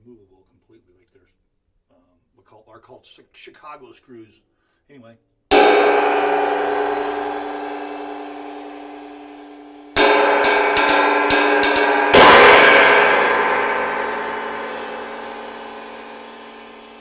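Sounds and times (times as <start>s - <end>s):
riveted cymbal struck: 5.5s - 17.0s.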